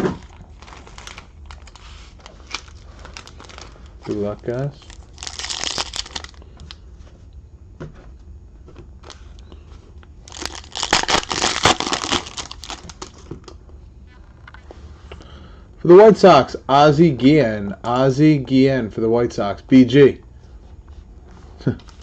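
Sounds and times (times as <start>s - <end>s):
plastic wrapping crinkling and tearing: 0.0s - 6.8s, 10.2s - 13.3s.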